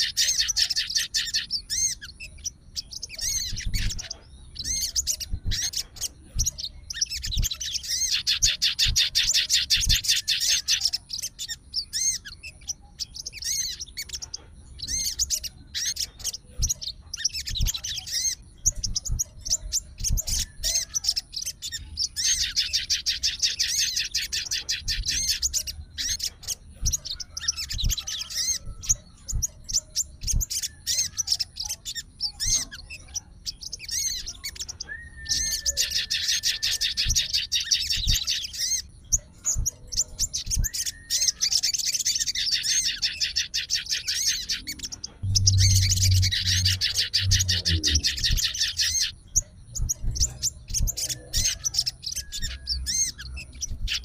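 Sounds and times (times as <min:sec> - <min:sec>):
songbird singing: 0:00.0 - 0:54.0
low hum: 0:45.2 - 0:48.9.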